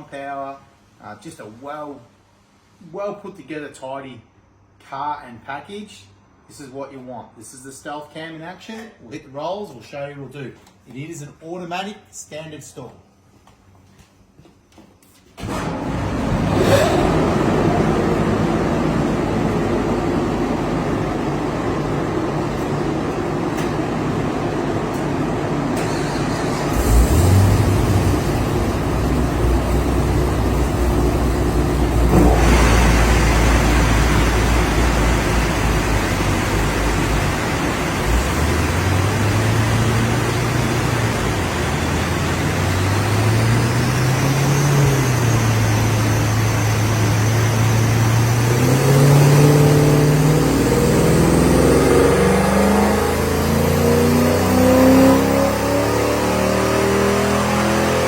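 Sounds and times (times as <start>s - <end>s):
car engine revving on a dyno: 15.4s - 58.0s.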